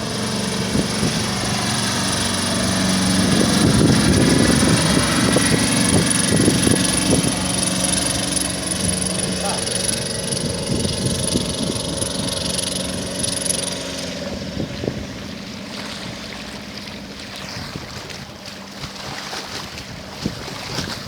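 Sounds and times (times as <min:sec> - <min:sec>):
motorboat engine running: 0:00.0 - 0:21.0
water noise: 0:00.0 - 0:21.0
wind on microphone: 0:00.0 - 0:21.0.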